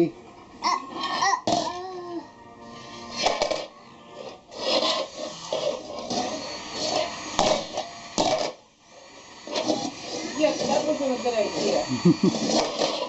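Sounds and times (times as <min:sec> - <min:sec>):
lids scraping across a floor: 0:02.6 - 0:08.6, 0:09.4 - 0:13.0.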